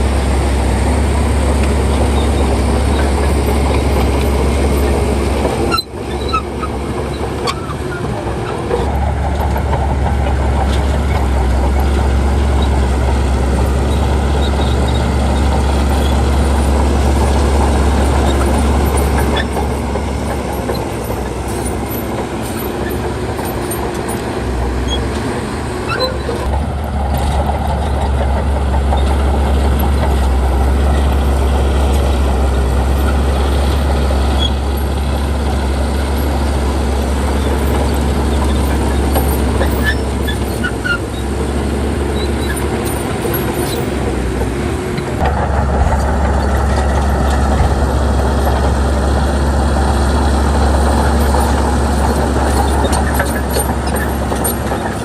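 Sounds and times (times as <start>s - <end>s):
diesel machinery running: 0.0s - 55.0s.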